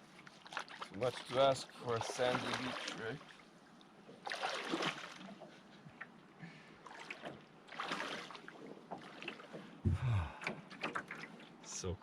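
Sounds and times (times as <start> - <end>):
water swishing against canoe: 0.0 - 11.8
short low thump: 9.8 - 10.3.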